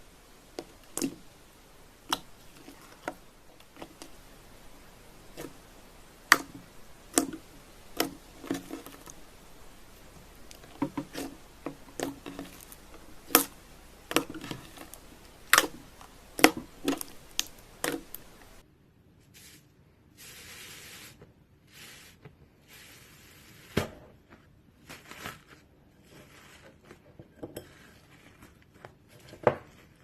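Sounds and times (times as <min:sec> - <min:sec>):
slime squished by hand: 0:00.3 - 0:18.6.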